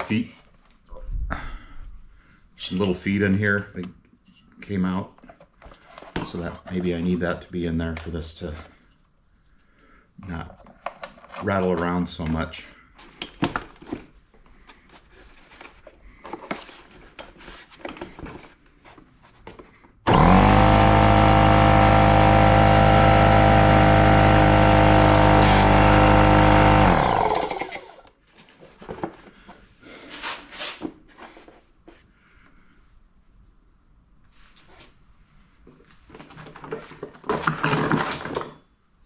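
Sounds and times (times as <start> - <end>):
air compressor running: 20.1 - 28.1.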